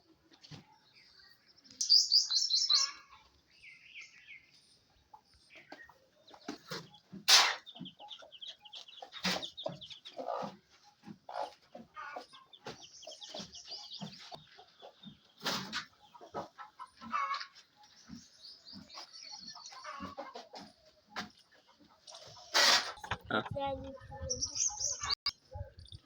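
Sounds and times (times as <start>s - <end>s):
small birds chirping: 0.0s - 26.0s
chickens clucking: 1.6s - 26.0s
loud sharp bird calls: 1.8s - 3.3s, 6.5s - 10.5s.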